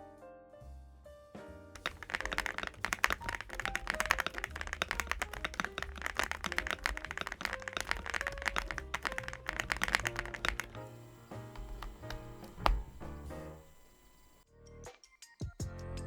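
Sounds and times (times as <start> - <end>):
fast typing on mechanical keyboard: 1.8 - 13.8.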